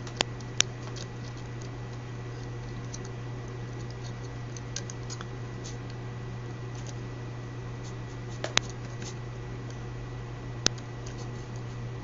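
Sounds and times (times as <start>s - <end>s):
electrical hum: 0.0s - 12.0s.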